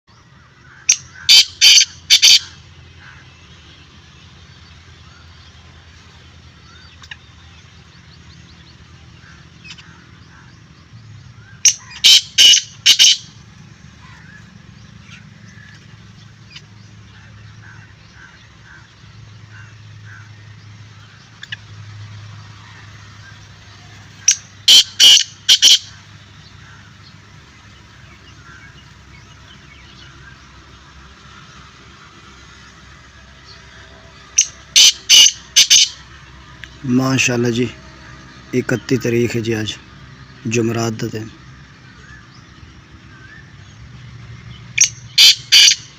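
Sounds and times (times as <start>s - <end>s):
francolin harsh calls: 0.4s - 4.0s, 11.4s - 30.7s, 32.4s - 43.6s, 44.6s - 45.9s.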